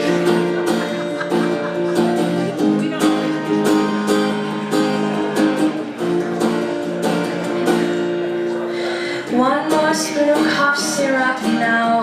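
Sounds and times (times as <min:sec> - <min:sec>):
guitar strumming chords: 0:00.0 - 0:12.0.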